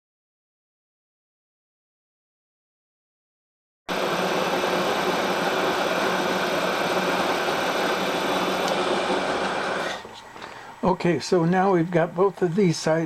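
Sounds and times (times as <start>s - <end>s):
milling machine cutting metal: 3.9s - 10.2s.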